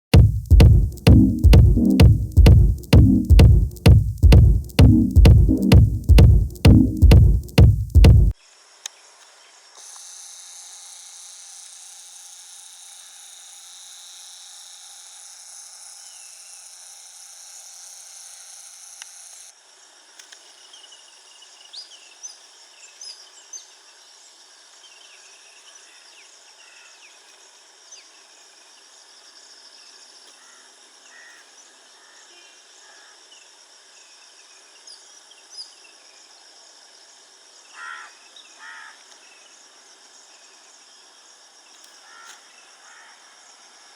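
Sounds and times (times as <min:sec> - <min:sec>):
insects buzzing: 0:07.4 - 0:43.9.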